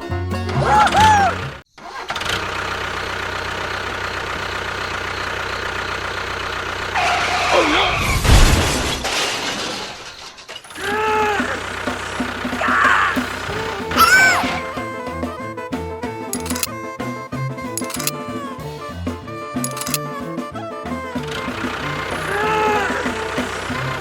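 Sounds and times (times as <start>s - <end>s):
small engine humming: 10.8s - 24.0s.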